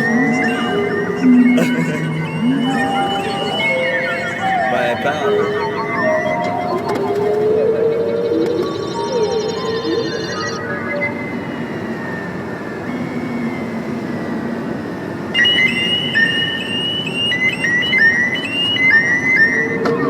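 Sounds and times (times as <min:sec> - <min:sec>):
faint wavering tones: 0:00.0 - 0:14.6.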